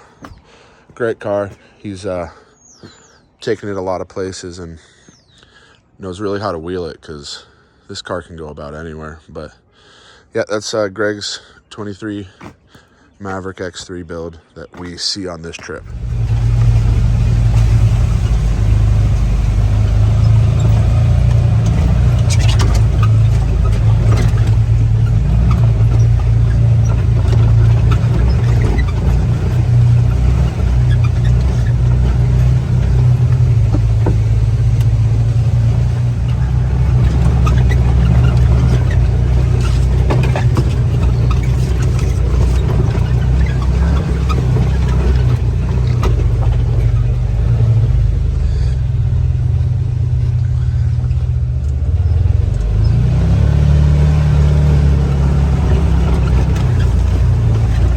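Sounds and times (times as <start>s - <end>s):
utility vehicle engine running: 15.6s - 57.9s.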